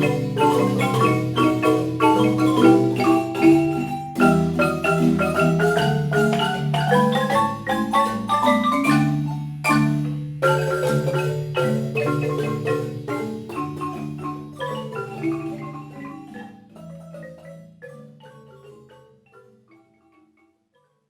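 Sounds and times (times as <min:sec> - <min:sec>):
instrumental music with struck notes: 0:00.0 - 0:21.0.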